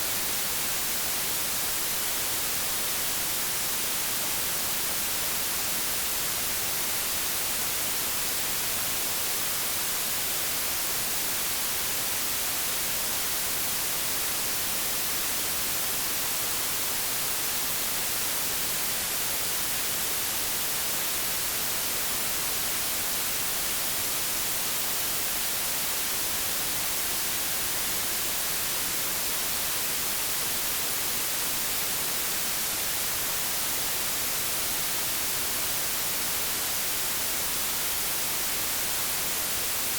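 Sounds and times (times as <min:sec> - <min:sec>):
white noise hiss: 0:00.0 - 0:39.9.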